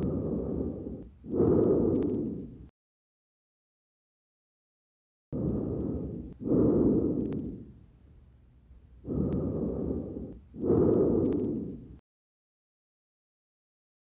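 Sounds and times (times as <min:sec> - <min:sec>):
breath sounds through stethoscope: 0:00.0 - 0:02.7, 0:05.4 - 0:07.8, 0:09.0 - 0:12.0.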